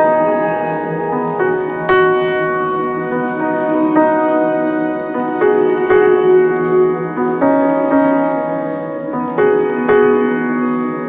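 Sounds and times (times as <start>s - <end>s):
bell-like keyboard melody: 0.0s - 11.0s.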